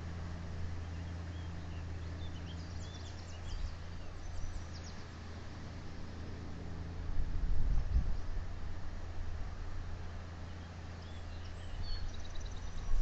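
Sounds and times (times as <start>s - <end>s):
faint high bird chirps: 0.8s - 5.1s, 10.5s - 13.0s
wind on microphone: 7.0s - 9.5s.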